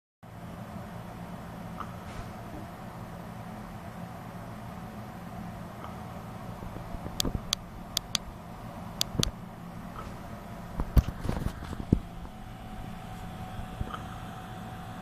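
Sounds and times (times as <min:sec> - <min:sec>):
sharp clicking sounds: 0:07.2 - 0:08.3, 0:09.0 - 0:09.4.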